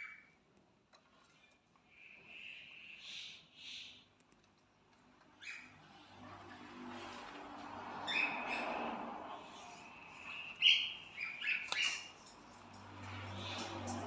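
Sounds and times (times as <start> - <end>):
cockatiels chirping: 5.4 - 5.8, 8.1 - 8.8, 9.4 - 12.3.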